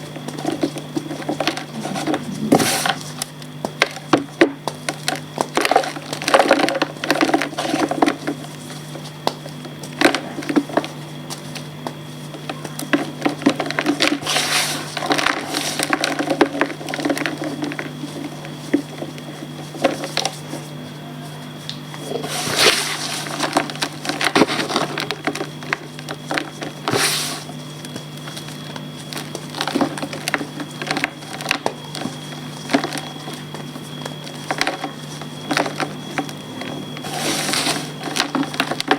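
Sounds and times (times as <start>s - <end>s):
chalk crumbling and crunching: 28.2s - 38.9s.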